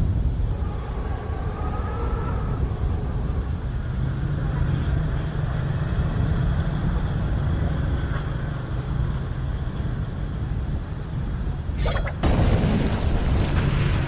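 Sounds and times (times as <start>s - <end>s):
rain hiss: 0.0s - 14.0s
thunder rumble: 9.0s - 14.0s.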